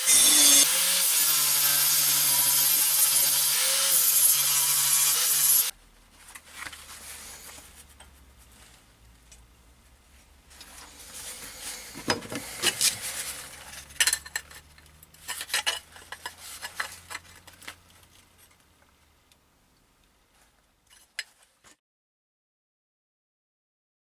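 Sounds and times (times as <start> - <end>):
metal pieces clinking and clattering: 13.7 - 17.3.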